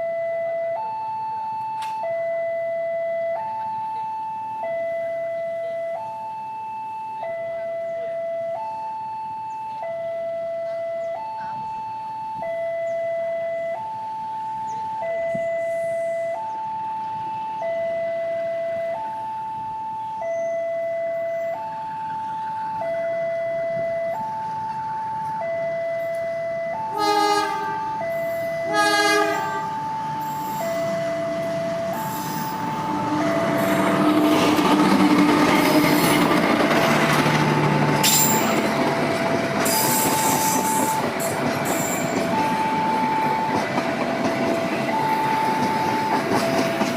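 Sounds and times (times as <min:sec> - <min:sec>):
level-crossing warning alarm: 0:00.0 - 0:46.9
train horn blasts: 0:26.9 - 0:37.1
train wheels clattering: 0:33.5 - 0:46.9.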